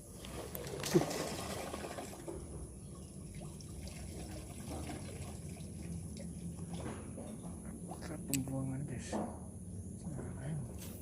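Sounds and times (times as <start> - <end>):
water trickling in a drain: 0.0 - 7.9.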